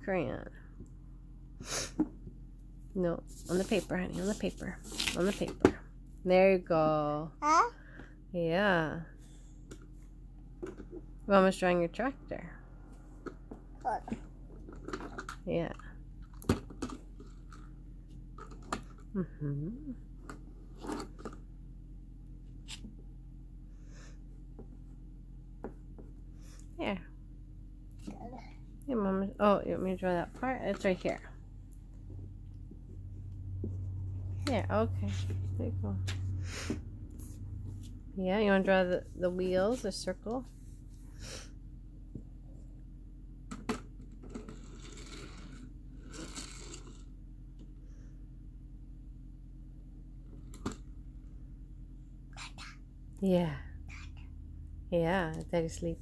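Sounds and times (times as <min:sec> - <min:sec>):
steady low hum: 0:00.0 - 0:56.0
paper and crayons rustling: 0:03.2 - 0:05.6.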